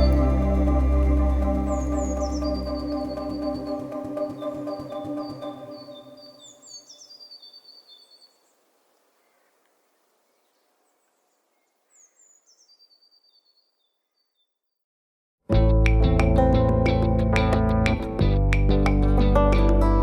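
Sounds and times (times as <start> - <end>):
organ-like music: 0.0 - 6.4
faint bird chirps: 0.0 - 14.8.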